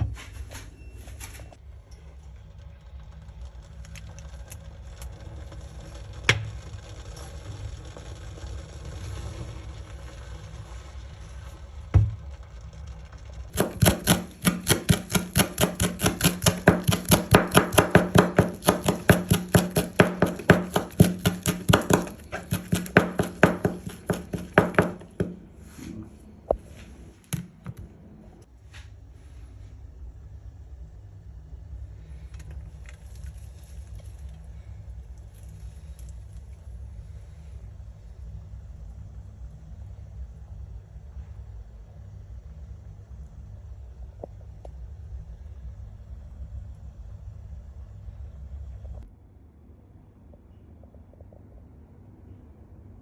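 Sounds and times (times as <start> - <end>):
low steady hum: 0.0 - 53.0
knife chopping on cutting board: 13.6 - 25.4.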